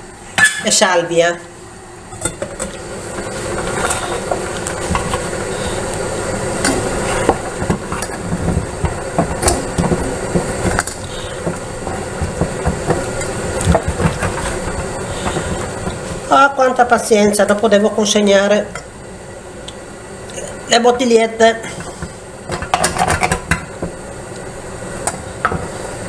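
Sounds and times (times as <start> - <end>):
sizzling and bubbling in a pot: 0.0 - 26.0
spoon scraping and knocking a pot: 6.6 - 16.3, 25.1 - 25.8.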